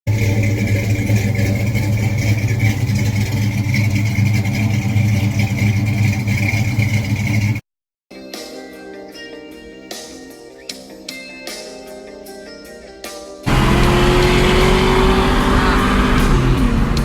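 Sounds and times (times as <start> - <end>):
car engine idling: 0.1 - 7.6, 13.5 - 17.0
guitar music: 13.5 - 17.0.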